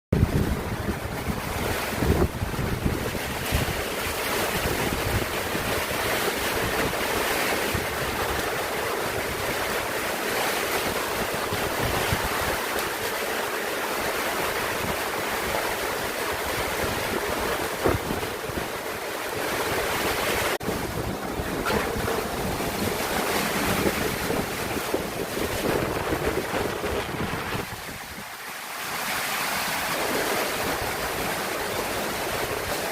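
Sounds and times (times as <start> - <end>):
wind gusting on microphone: 0.2 - 10.0, 10.6 - 12.8, 14.4 - 28.4.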